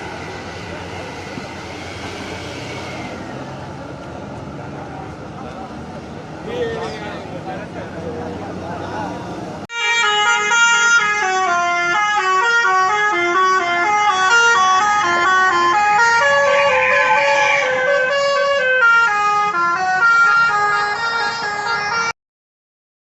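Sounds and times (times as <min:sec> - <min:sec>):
musical air horn tune: 0:09.7 - 0:22.1.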